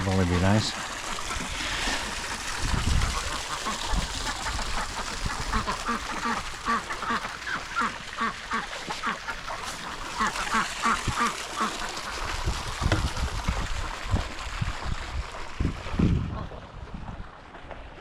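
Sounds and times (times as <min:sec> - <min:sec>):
ducks quacking: 0:00.2 - 0:12.4.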